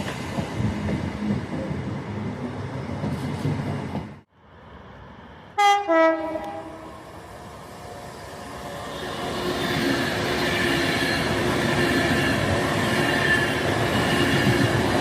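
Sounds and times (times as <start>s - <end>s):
train rumbling past: 0.0s - 15.0s
two-tone train horn: 5.6s - 7.0s.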